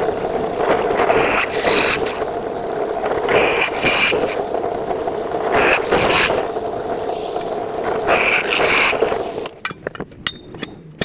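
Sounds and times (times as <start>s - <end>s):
power drill boring a hole: 5.5s - 9.5s.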